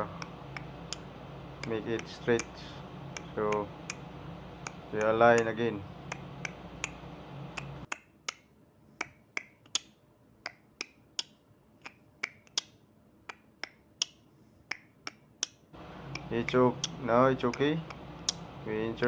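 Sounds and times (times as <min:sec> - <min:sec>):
low steady hum: 0:00.0 - 0:07.9, 0:15.8 - 0:19.0.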